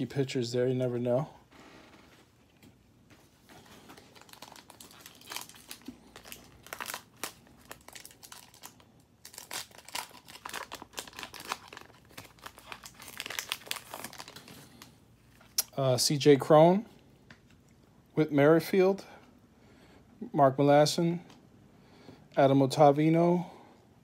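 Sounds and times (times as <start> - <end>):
wrapper tearing and crinkling: 3.6 - 15.6.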